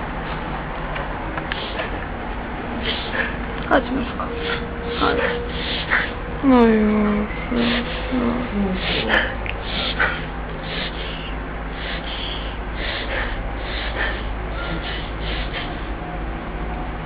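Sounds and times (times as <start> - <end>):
dog reverse sneezing: 1.5 - 2.0, 2.8 - 3.4, 8.8 - 15.8.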